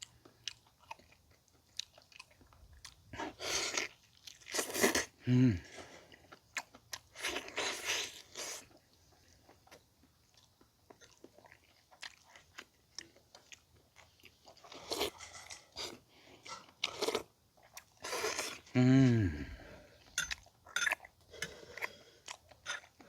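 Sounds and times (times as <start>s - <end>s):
chewing and biting: 0.0s - 5.0s, 6.2s - 15.2s.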